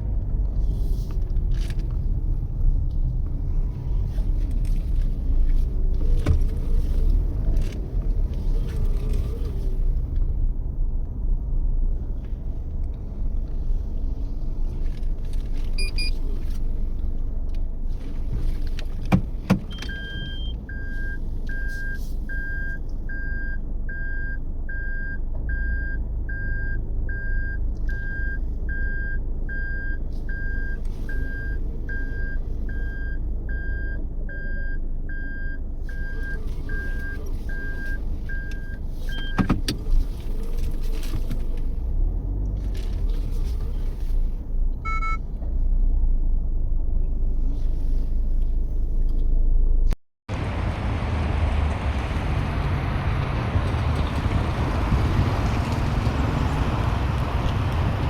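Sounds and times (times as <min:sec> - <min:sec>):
car engine and road noise: 0:00.0 - 0:58.0
dashboard warning chime beeping: 0:15.8 - 0:16.2, 0:19.7 - 0:39.5, 0:44.8 - 0:45.2.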